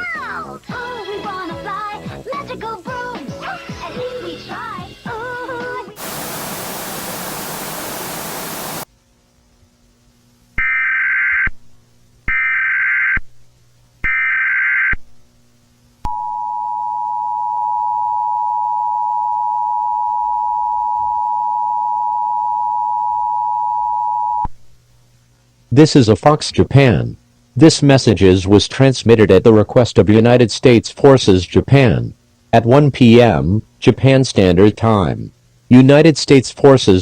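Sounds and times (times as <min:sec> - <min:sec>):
static hiss: 0:05.8 - 0:10.5
warbling data bursts: 0:06.0 - 0:08.8.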